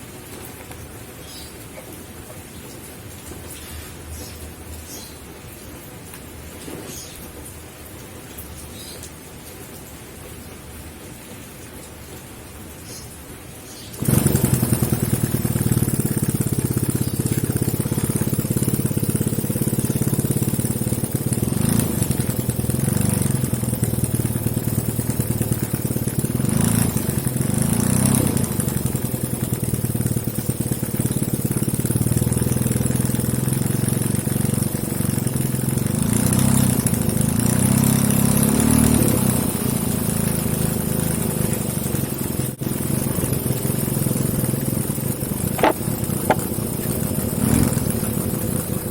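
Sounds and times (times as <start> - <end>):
small engine running: 14.0 - 48.9.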